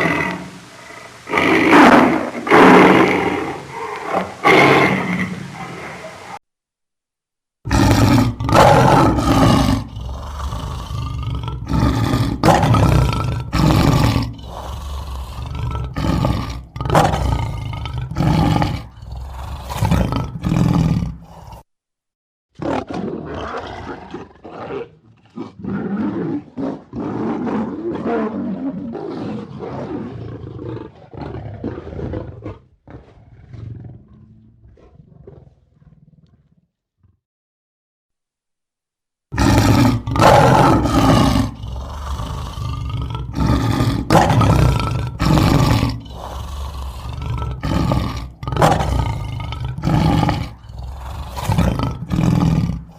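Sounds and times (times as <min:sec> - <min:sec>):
lion roaring and grunting: 0:00.0 - 0:06.4, 0:07.7 - 0:21.7, 0:22.6 - 0:37.2, 0:39.4 - 0:52.9.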